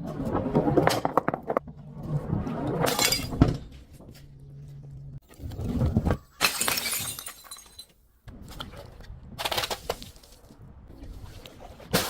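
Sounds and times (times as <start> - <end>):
glass bottle shattering: 2.9 - 3.4, 6.4 - 7.9.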